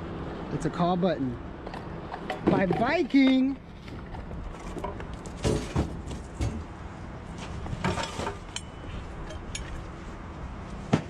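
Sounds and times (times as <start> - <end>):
scraping rustle: 1.7 - 10.2
knocks in a dumpster: 5.4 - 6.7.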